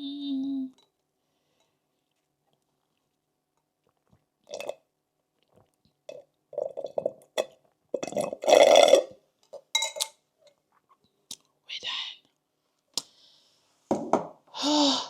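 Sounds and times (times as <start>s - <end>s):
person gulping a drink: 2.2s - 9.2s.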